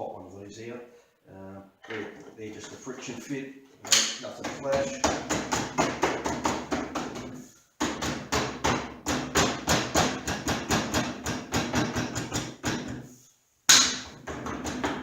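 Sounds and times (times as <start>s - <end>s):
rapid knocking on plywood: 4.4s - 13.0s, 14.1s - 15.0s.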